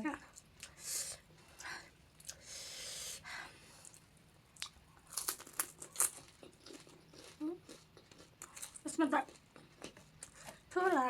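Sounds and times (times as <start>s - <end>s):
breathy hiss: 0.7s - 3.9s
crunching and chewing crisps: 4.6s - 10.6s.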